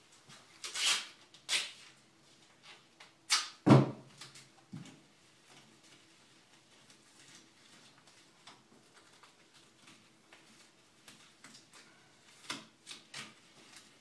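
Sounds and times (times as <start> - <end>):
duct tape ripping: 0.6 - 1.8, 3.3 - 3.6.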